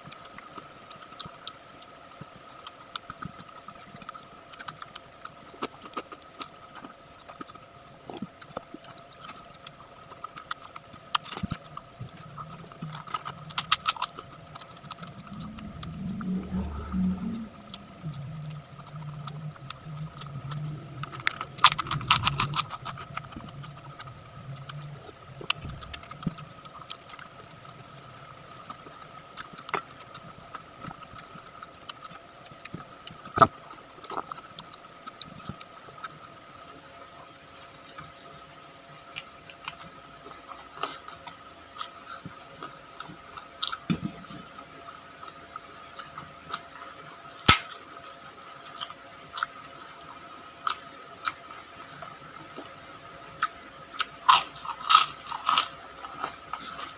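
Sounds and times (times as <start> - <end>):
sharp clicks and smacks: 0.0 - 17.0, 17.6 - 27.3, 47.2 - 47.8
faint steady hum: 0.0 - 56.9
chewing and biting: 2.6 - 47.8, 48.6 - 51.5, 53.4 - 56.9.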